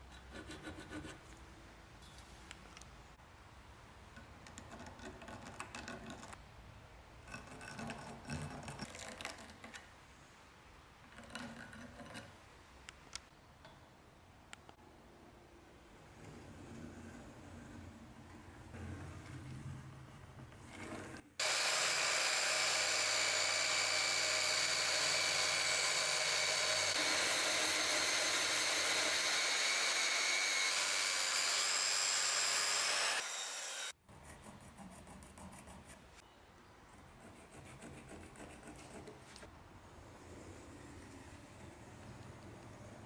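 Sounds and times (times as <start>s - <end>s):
power tool whining: 21.4s - 34.0s.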